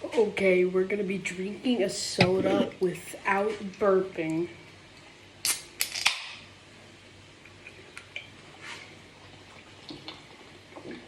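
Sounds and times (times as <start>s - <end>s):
gas hissing: 2.2s - 2.8s
can snapping open: 5.4s - 6.4s.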